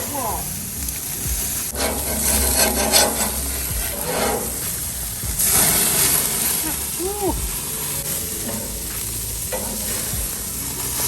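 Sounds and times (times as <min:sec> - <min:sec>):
metal tool scraping grill: 0:01.6 - 0:06.9, 0:07.7 - 0:11.0.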